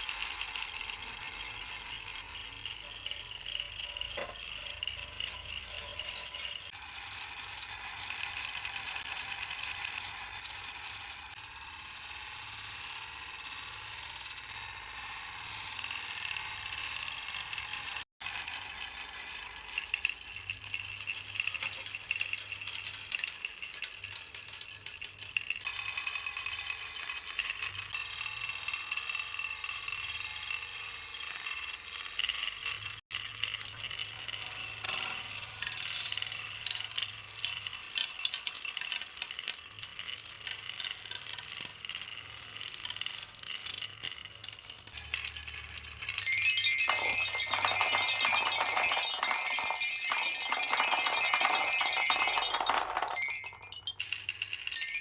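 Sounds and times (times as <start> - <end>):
marbles rattling down wooden run: 0.4 - 6.8, 19.4 - 25.6, 34.3 - 55.0.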